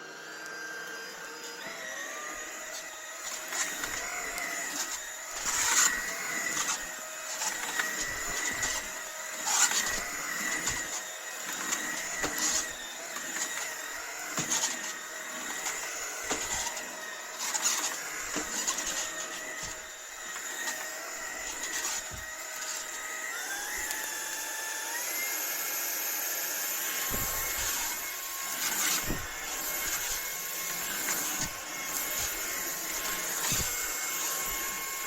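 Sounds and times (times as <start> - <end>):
stick vacuum motor whining: 0.0 - 35.0
scrapes and knocks: 27.0 - 35.0.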